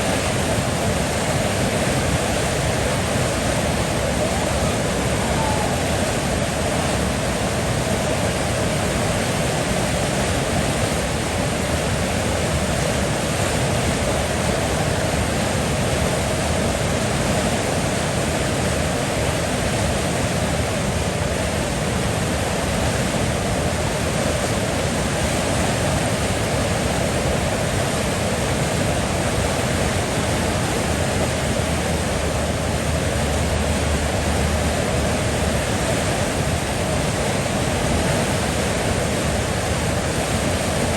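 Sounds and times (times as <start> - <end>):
river water flowing: 0.0 - 40.9.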